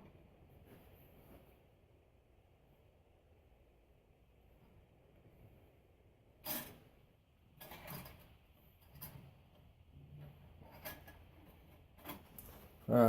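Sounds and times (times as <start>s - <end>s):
metal parts clicking and clanking: 7.5s - 12.7s.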